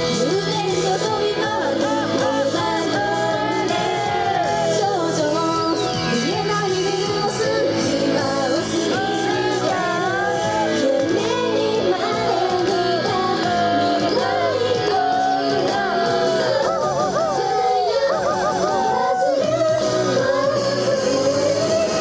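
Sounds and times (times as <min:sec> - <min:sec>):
people singing: 0:00.0 - 0:22.0.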